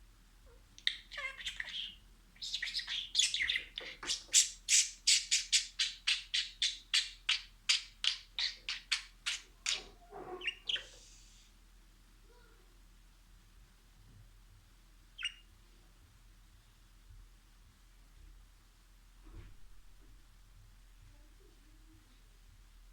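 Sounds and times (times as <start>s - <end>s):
budgerigar chirping: 0.8s - 11.0s, 15.2s - 15.5s.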